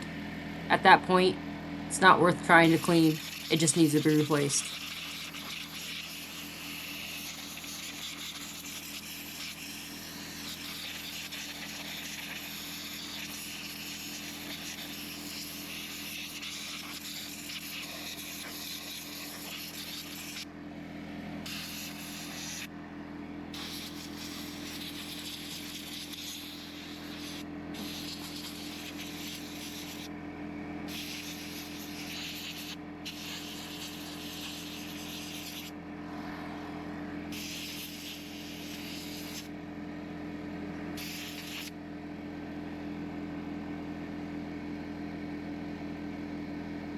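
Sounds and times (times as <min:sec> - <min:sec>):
steady hum: 0:00.0 - 0:43.9
air nozzle hissing: 0:02.6 - 0:20.4, 0:21.4 - 0:22.7, 0:23.5 - 0:30.1, 0:30.9 - 0:35.7, 0:37.3 - 0:39.5, 0:41.0 - 0:41.7.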